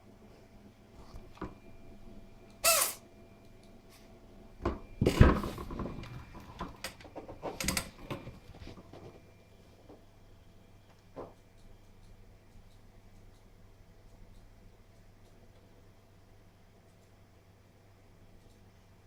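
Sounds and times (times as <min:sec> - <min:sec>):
cat sneezing: 0:02.6 - 0:03.0.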